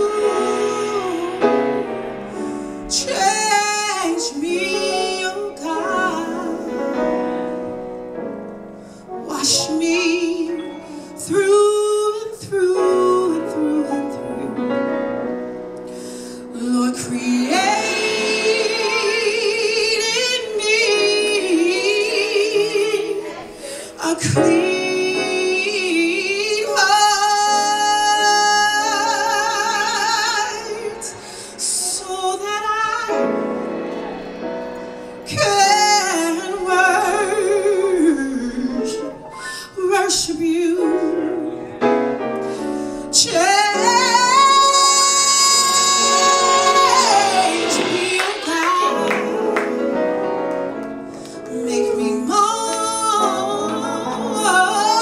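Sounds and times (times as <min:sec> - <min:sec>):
woman singing gospel: 0:00.0 - 0:07.6, 0:09.2 - 0:14.8, 0:16.4 - 0:33.5, 0:35.2 - 0:41.7, 0:43.1 - 0:55.0
sustained instrumental accompaniment: 0:00.0 - 0:12.0, 0:13.4 - 0:39.7, 0:41.0 - 0:55.0.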